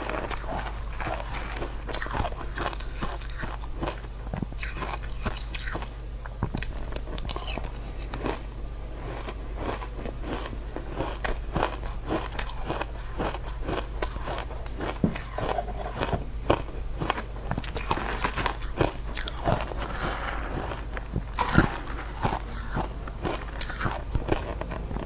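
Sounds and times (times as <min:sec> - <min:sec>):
steady low hum: 0:00.0 - 0:25.0
person crunching ice: 0:09.0 - 0:25.0.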